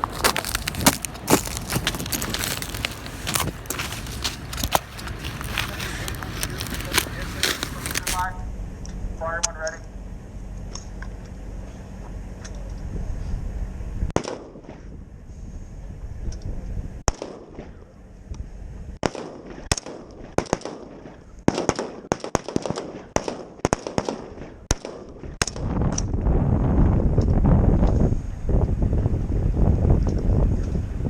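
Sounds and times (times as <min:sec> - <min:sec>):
wind buffeting microphone: 0:00.0 - 0:08.4, 0:25.5 - 0:31.0.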